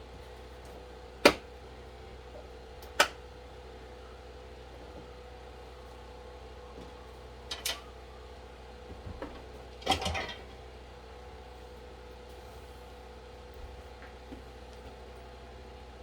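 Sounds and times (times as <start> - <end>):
objects clattering set down: 9.2 - 10.5.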